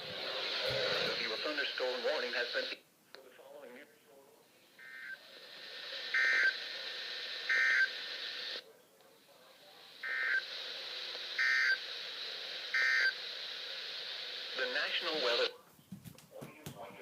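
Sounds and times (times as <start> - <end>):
radio hiss: 0.0 - 15.6.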